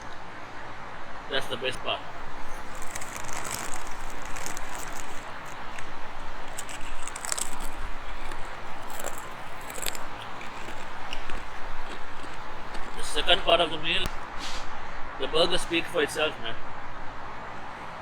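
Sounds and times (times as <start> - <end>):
chewing crunchy fries: 1.7 - 14.4.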